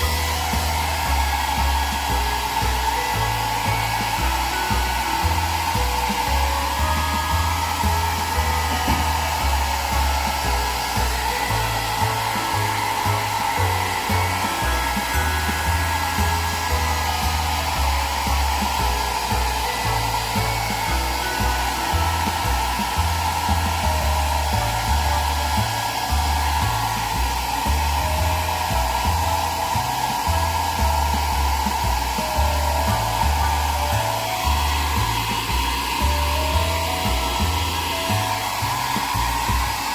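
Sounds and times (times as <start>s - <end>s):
background music with bass line: 0.0s - 39.9s
hair dryer blowing: 0.0s - 39.9s.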